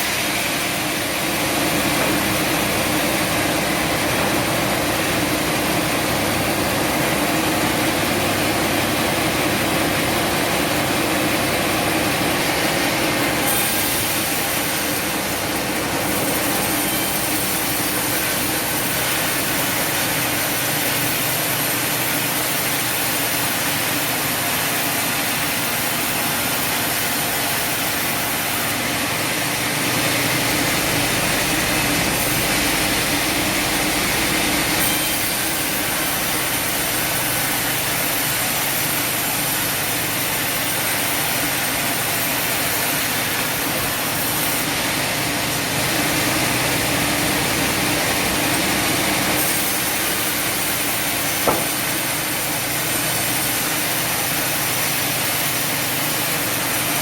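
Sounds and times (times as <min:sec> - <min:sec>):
sawmill saw droning: 0:00.0 - 0:57.0
sharp knock: 0:51.4 - 0:51.9.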